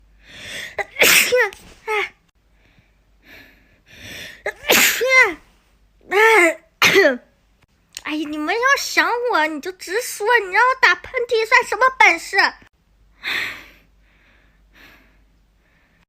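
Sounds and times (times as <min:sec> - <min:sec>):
breathy in-breath: 0:00.2 - 0:00.8, 0:02.5 - 0:04.4, 0:13.2 - 0:16.0
woman sneezing: 0:00.6 - 0:02.2, 0:04.4 - 0:05.4, 0:06.2 - 0:07.3.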